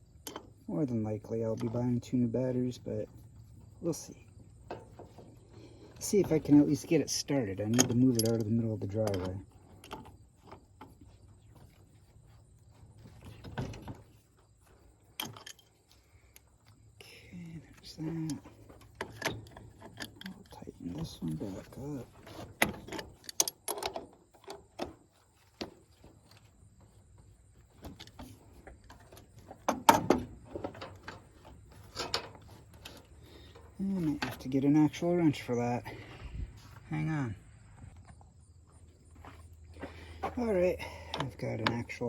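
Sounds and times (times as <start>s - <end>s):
metal tool clicking and scraping: 6.0s - 10.0s.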